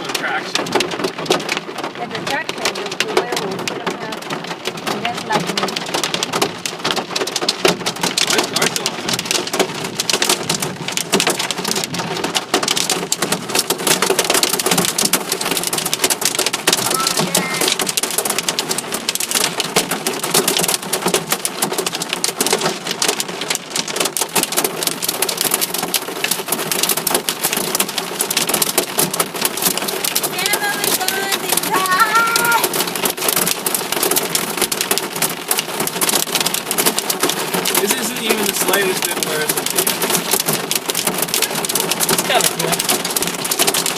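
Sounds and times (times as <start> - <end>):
hail clattering on car: 0.0 - 43.9.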